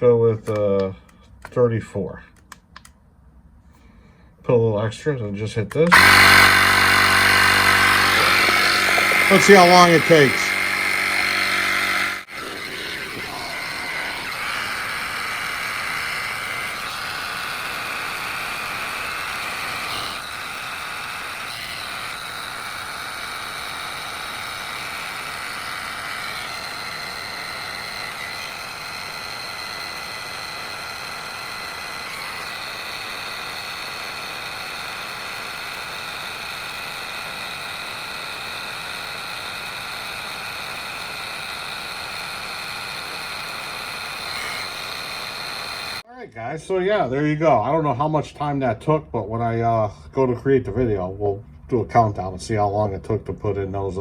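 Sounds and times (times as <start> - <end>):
tire inflator compressor buzzing: 5.7 - 46.1.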